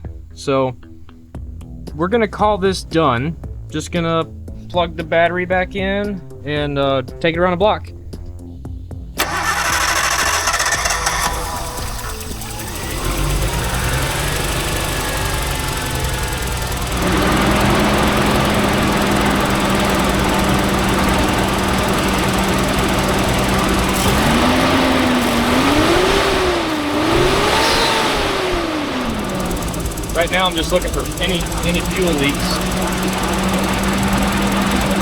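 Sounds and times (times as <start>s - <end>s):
car engine idling: 9.2s - 35.0s.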